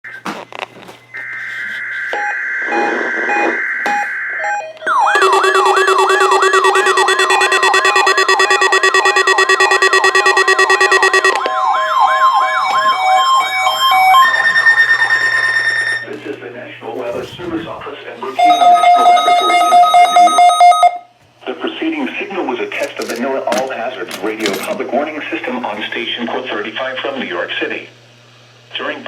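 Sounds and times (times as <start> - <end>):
steady high alarm tones: 1.2 - 16.1, 18.4 - 21.1
warbling alarm tones: 1.2 - 16.1, 18.4 - 21.1
steady beeping tones: 2.2 - 11.8
rising and falling siren sweep: 2.4 - 16.0.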